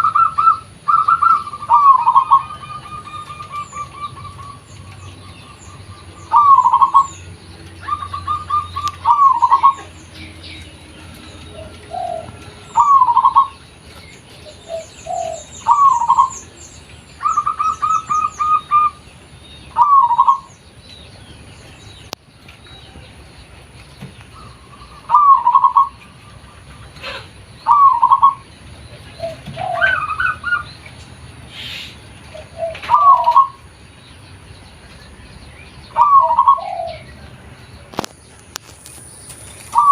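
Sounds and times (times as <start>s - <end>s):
dove cooing: 0.0s - 13.8s, 14.4s - 16.4s, 19.7s - 20.5s, 24.3s - 30.7s, 31.5s - 33.7s, 35.9s - 37.2s, 39.6s - 39.9s
small birds chirping: 0.0s - 39.9s.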